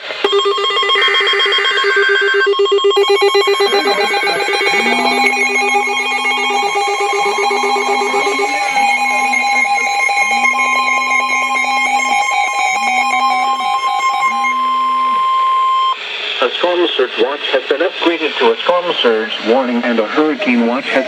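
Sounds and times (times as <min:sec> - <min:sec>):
harsh two-tone alert tone: 0:00.3 - 0:16.0
lower buzzing alert tone: 0:00.3 - 0:16.0
phone vibration buzzing: 0:00.3 - 0:16.0.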